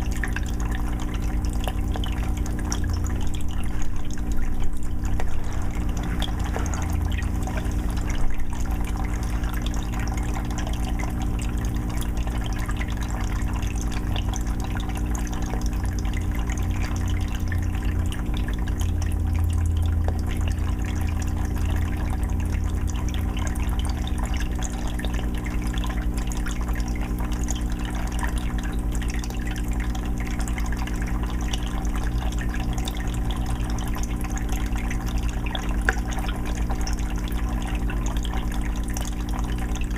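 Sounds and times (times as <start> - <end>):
aquarium filter hum: 0.0 - 39.9
water trickling and splashing: 0.0 - 39.9.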